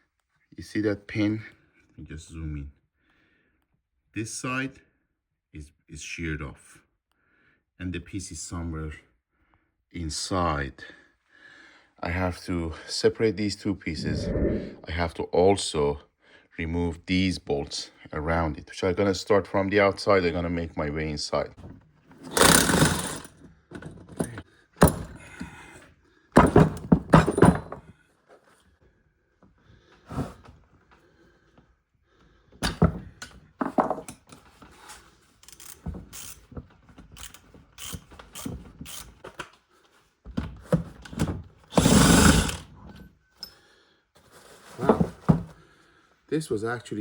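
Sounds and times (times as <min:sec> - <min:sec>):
tool noise undoing bolts: 0:22.2 - 0:25.2, 0:35.4 - 0:36.5, 0:41.7 - 0:42.7
metal parts knocking on workbench: 0:26.4 - 0:27.8.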